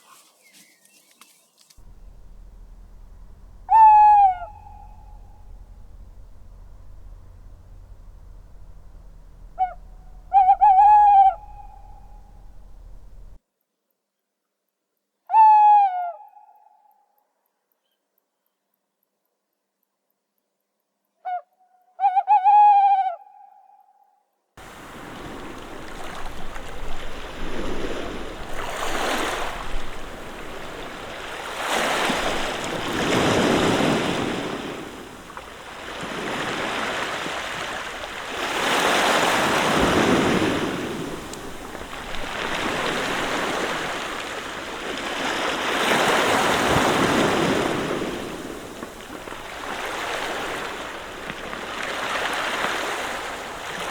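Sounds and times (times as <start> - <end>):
owl hooting: 1.8 - 13.4, 15.3 - 16.8, 21.2 - 24.0
waves washing over pebbles: 24.6 - 53.9.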